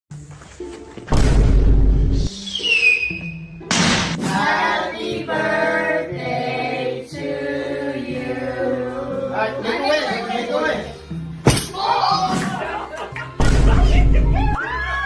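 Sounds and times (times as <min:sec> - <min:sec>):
choir singing held notes: 0:04.3 - 0:09.9.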